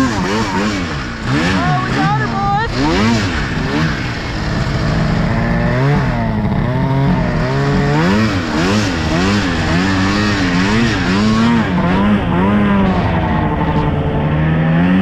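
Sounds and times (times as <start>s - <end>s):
snowmobile engine revving: 0.0s - 15.0s.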